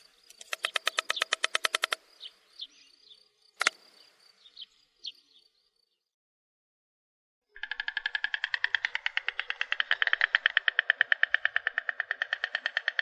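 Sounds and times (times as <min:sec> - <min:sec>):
stork bill clattering: 0:00.2 - 0:02.0, 0:07.6 - 0:13.0.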